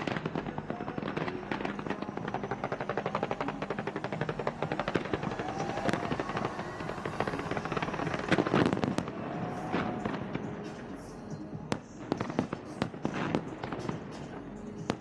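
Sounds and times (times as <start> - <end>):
fireworks bangs: 0.0 - 15.0
fireworks crackling: 0.0 - 15.0.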